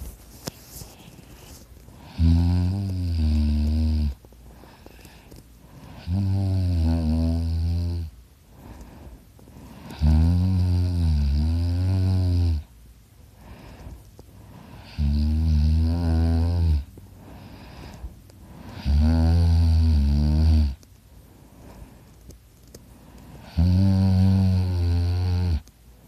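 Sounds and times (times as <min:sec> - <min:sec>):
boy snoring: 0:02.0 - 0:05.2, 0:05.8 - 0:08.1, 0:09.6 - 0:12.7, 0:14.5 - 0:18.0, 0:18.6 - 0:20.8, 0:23.4 - 0:25.7.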